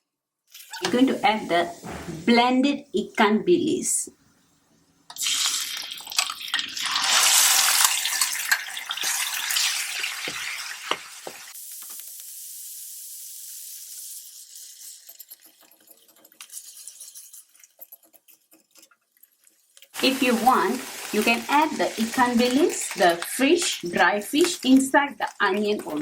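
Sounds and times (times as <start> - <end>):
food sizzling in hot oil: 0.5 - 2.2, 5.1 - 17.8, 19.9 - 26.0
faint crackles: 14.8 - 26.0.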